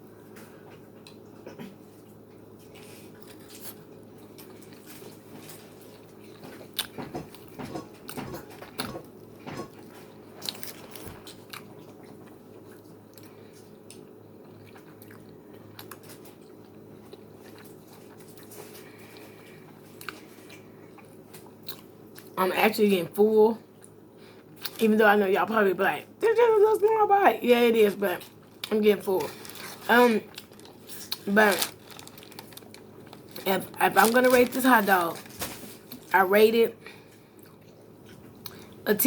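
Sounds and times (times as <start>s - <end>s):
person chewing and eating: 0.7s - 22.4s, 23.7s - 24.8s, 28.2s - 36.2s, 36.8s - 38.8s.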